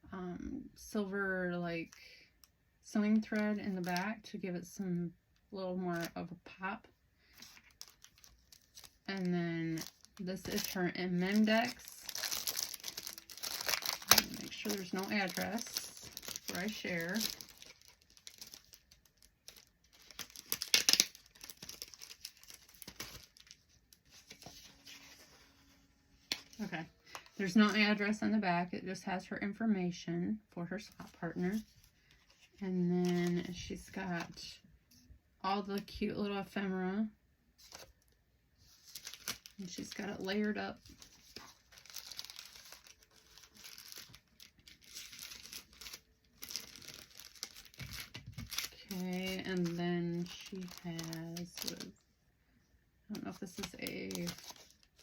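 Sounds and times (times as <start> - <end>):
packaging rustling and crinkling: 3.2 - 4.0, 7.3 - 27.4, 30.9 - 33.6, 37.6 - 52.0, 53.2 - 55.0.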